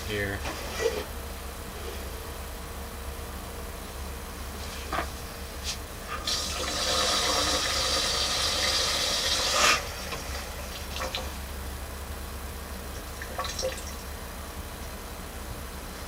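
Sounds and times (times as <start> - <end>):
water gushing into drain: 6.2 - 11.3, 13.2 - 14.0.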